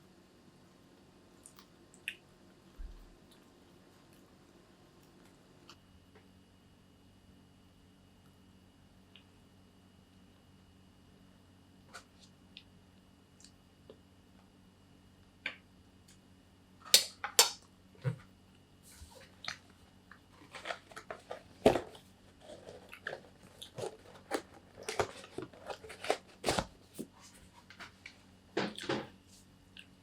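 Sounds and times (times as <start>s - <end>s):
person crunching food: 20.4s - 27.2s.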